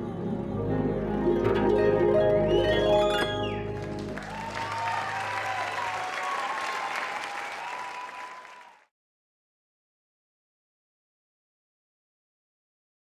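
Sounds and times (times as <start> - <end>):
audience applauding: 2.6 - 8.9.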